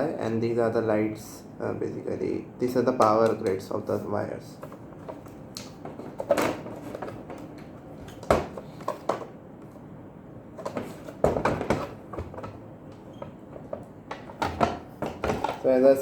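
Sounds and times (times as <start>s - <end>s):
appliance parts knocking and clattering: 4.6s - 9.3s, 10.6s - 15.8s.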